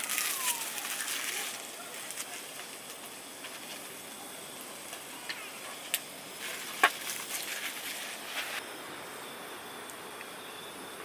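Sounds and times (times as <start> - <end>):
rustling: 0.0 - 4.0, 6.4 - 8.6
steady hiss: 0.0 - 11.0.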